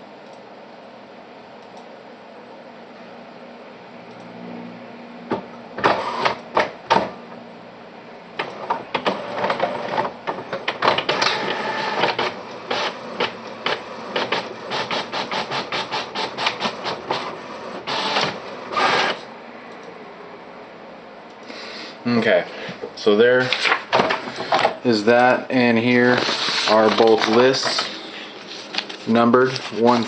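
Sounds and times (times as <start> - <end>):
printer printing: 5.3 - 7.4, 8.4 - 19.3, 23.4 - 30.0.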